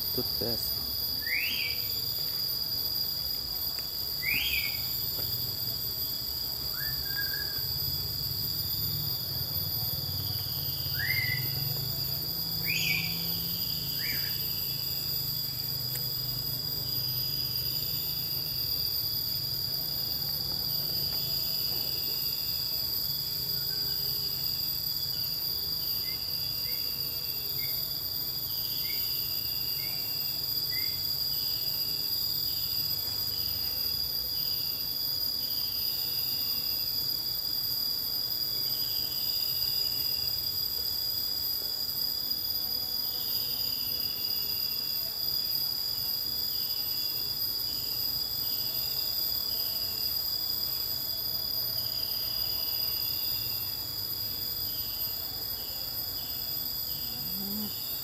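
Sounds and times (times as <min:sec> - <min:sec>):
insects shrilling: 0:00.0 - 0:58.0
bird whistled calls: 0:06.7 - 0:07.7, 0:10.9 - 0:11.6.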